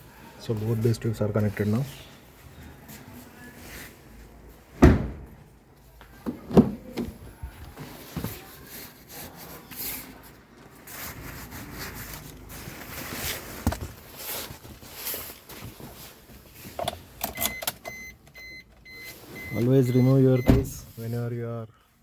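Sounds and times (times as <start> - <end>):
short electronic beeps: 17.4 - 20.8.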